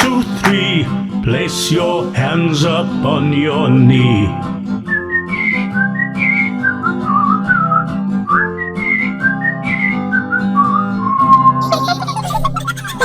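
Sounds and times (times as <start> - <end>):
backing chords and bass: 3.0 - 4.9
whistled tune: 4.7 - 11.6.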